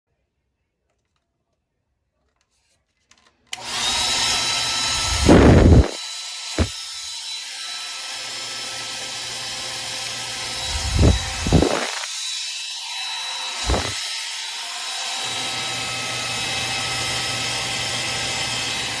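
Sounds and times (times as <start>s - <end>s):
hair dryer running: 3.6s - 6.8s, 7.8s - 19.0s
low thumps: 5.0s - 6.0s, 10.6s - 12.0s, 13.7s - 14.0s.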